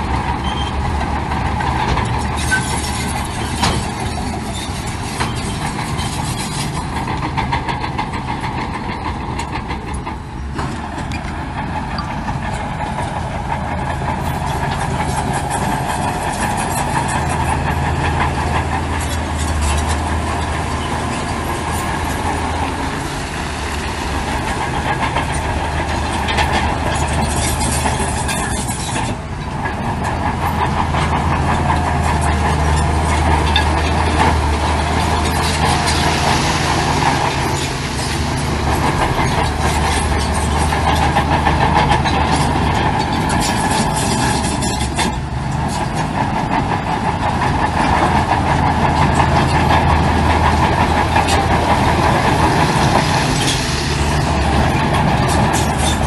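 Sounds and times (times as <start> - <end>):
diesel machinery engine hum: 0.0 - 56.0.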